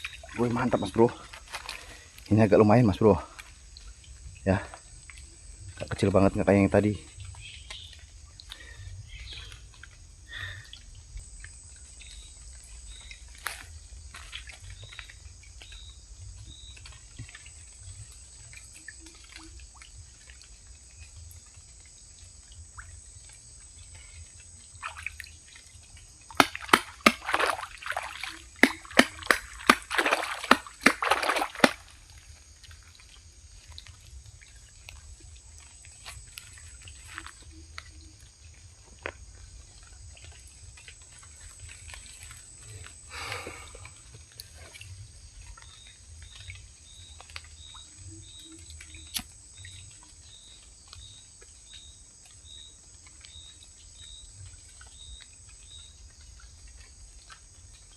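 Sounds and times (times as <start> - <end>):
faint outdoor background: 0.0 - 57.9
water sloshing and splashing: 0.0 - 57.9
sharp knocks and slaps: 26.4 - 27.6, 28.6 - 31.8.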